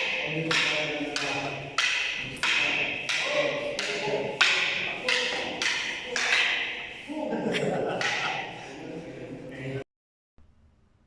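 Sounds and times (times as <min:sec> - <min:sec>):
rattan sticks clacking: 0:00.0 - 0:07.1, 0:07.9 - 0:08.6.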